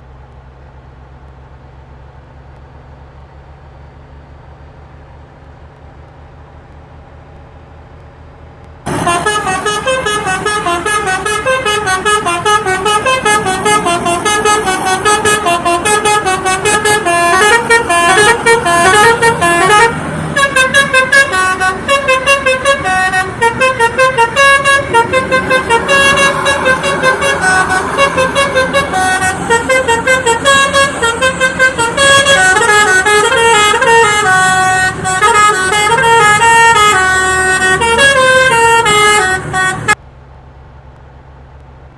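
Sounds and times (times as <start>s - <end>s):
low vehicle rumble: 0.0s - 41.9s
multi-tone bus horn tune: 8.9s - 40.0s.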